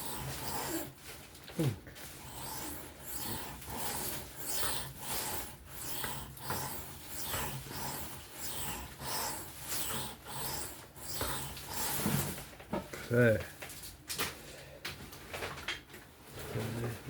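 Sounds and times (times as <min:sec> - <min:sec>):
knife rasping on sharpening stone: 0:02.2 - 0:12.4.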